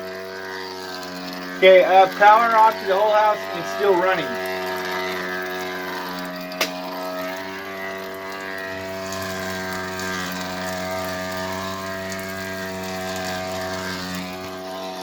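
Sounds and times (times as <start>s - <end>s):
lower hum: 0.0s - 7.7s
washing machine humming: 0.0s - 15.0s.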